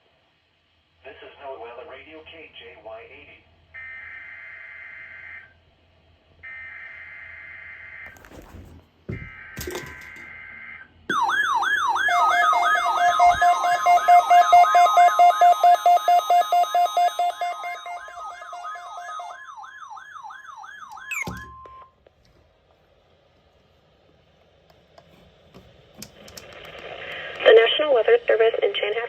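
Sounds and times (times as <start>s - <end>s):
warbling siren: 3.8s - 5.6s, 6.4s - 8.4s, 9.1s - 21.9s
steady high alert tone: 11.1s - 19.9s.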